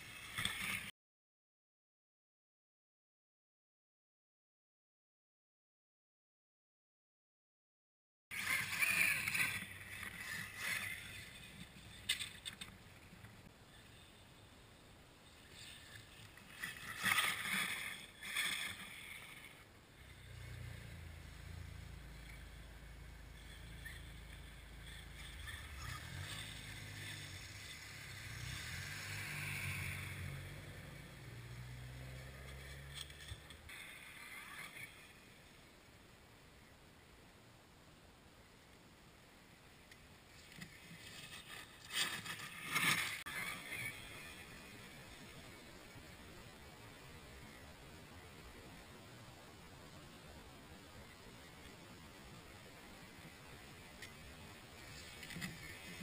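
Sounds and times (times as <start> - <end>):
tyres churning snow: 15.2 - 35.3.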